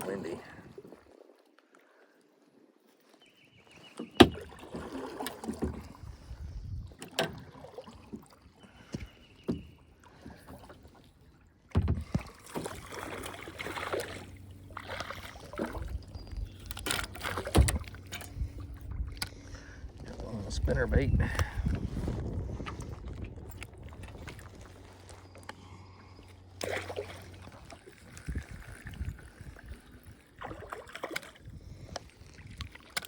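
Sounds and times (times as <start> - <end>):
wind rumbling on microphone: 5.7 - 7.6, 15.4 - 26.2, 27.4 - 32.9.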